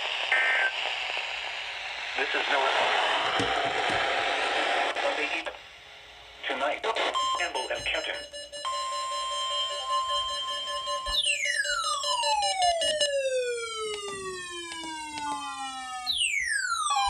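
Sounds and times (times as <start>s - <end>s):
steady electronic tones: 6.9s - 17.0s.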